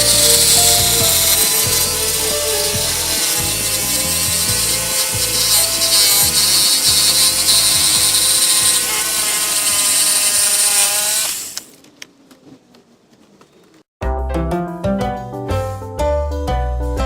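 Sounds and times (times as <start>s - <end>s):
chainsaw cutting wood: 0.0s - 11.8s.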